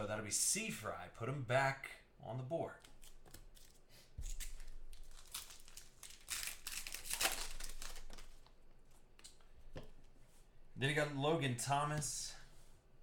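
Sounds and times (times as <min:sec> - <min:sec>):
plastic packaging crinkling: 0:03.0 - 0:08.6.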